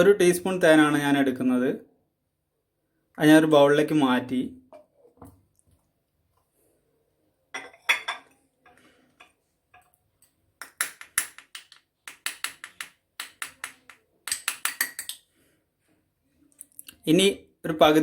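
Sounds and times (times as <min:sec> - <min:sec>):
teaspoon clinking against bowl: 0:10.6 - 0:15.2.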